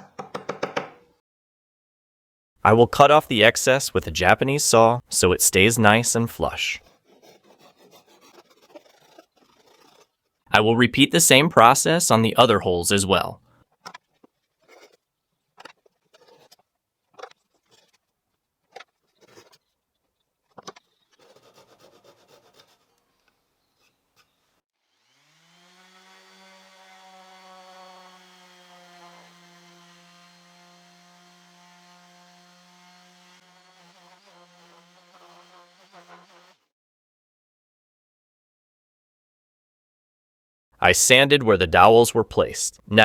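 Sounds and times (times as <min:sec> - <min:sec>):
hammer tapping wooden dowels: 0:00.0 - 0:01.0
hand saw sawing: 0:06.0 - 0:10.5, 0:13.9 - 0:18.1, 0:18.8 - 0:19.7, 0:21.0 - 0:23.0, 0:24.9 - 0:36.7
electric sander whining: 0:24.8 - 0:36.6.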